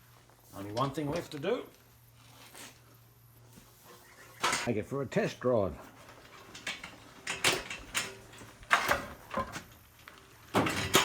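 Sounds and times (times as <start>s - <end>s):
hand trolley rattling and knocking: 5.9s - 9.5s.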